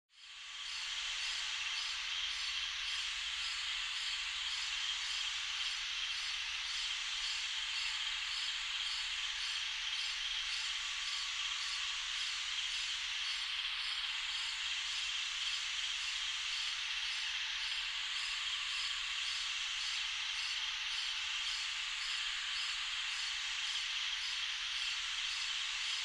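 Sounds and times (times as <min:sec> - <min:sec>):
faint insect chirps: 0:00.1 - 0:26.0
crickets trilling: 0:00.2 - 0:26.0.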